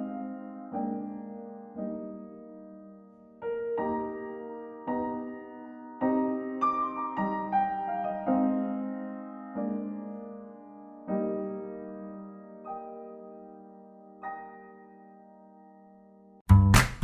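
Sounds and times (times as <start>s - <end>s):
soft piano music: 0.0s - 16.4s.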